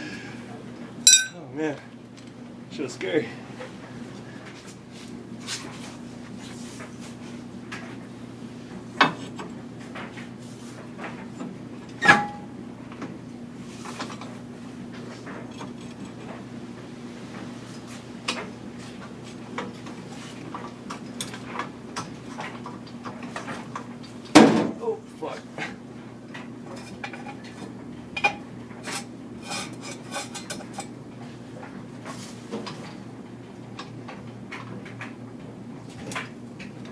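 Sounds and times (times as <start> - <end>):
metal tools clinking: 1.1 - 1.4.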